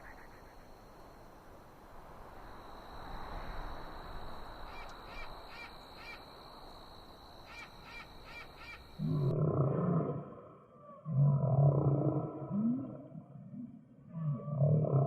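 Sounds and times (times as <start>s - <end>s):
background hiss: 0.0s - 9.3s
deep animal call: 9.0s - 15.0s.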